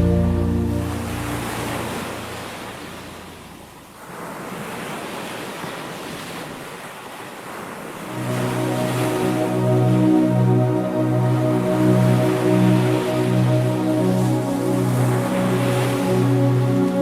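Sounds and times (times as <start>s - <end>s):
soft sustained music: 0.0s - 3.8s, 8.0s - 17.0s
ocean waves washing ashore: 0.0s - 17.0s.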